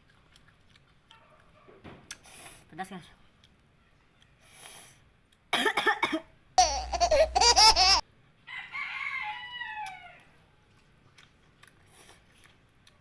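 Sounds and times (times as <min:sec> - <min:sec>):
rooster-like crowing: 0:08.5 - 0:10.3.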